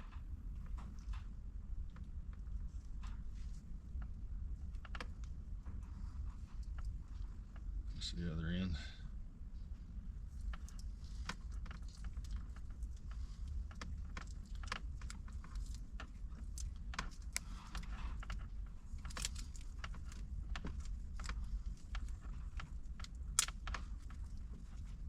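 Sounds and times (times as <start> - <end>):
light clicks and crackles of cable: 0.0 - 8.0, 10.2 - 25.0
low steady hum: 0.0 - 25.0.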